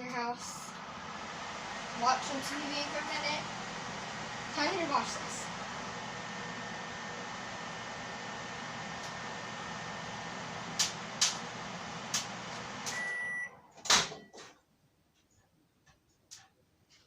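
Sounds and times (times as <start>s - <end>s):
microwave oven humming: 0.0s - 14.4s
microwave timer beep: 12.8s - 14.4s.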